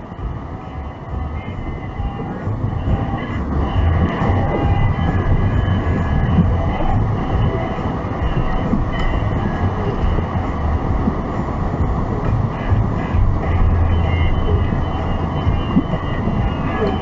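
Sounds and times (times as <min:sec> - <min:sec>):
car cabin road rumble: 0:00.0 - 0:17.0
pulsing low drone: 0:00.0 - 0:17.0.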